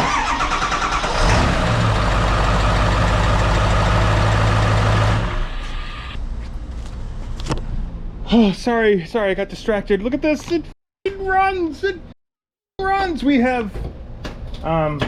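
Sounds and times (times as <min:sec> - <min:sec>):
diesel engine running: 0:01.0 - 0:06.2.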